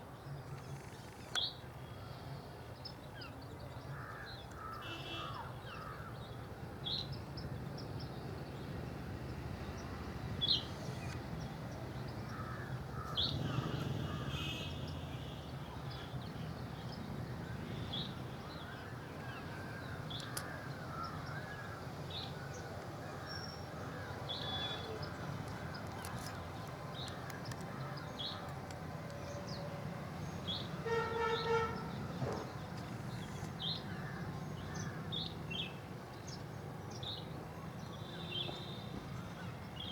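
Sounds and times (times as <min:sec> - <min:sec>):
harsh bird caws: 0:12.3 - 0:14.7.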